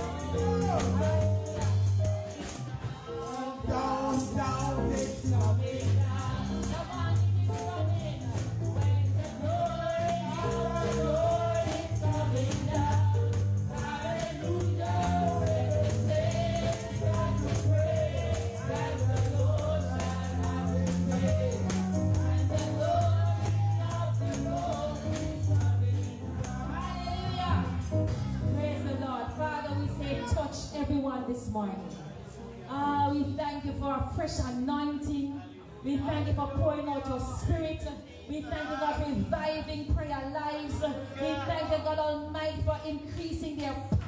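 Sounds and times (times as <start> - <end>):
tambourine shaken in rhythm: 0.0 - 30.6
gospel voices singing: 0.0 - 31.0, 35.9 - 39.8, 40.4 - 42.6.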